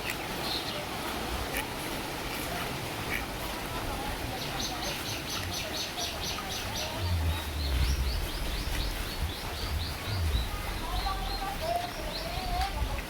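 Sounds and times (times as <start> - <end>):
wind gusting: 6.1 - 13.0
low rumble: 6.6 - 12.9
heavy rain: 6.6 - 13.0.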